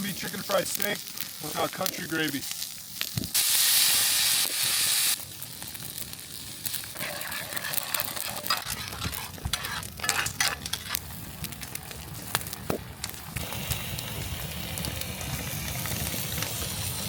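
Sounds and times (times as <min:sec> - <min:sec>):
frying pan sizzling: 0:00.0 - 0:17.0
utensil stirring and scraping pan: 0:06.8 - 0:11.1.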